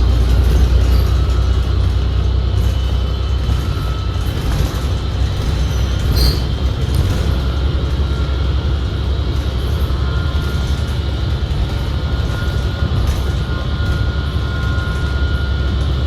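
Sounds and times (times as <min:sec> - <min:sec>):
bus cabin rumble: 0:00.0 - 0:16.0
transmission whine: 0:00.0 - 0:16.0
brief high squeak or rattle: 0:03.6 - 0:07.4.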